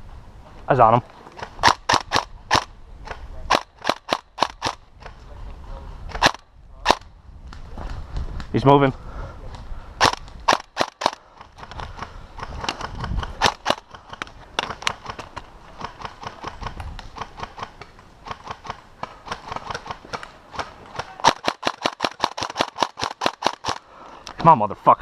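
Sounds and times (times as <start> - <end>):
airsoft rifles firing: 1.4 - 4.8, 6.1 - 7.1, 10.0 - 23.9.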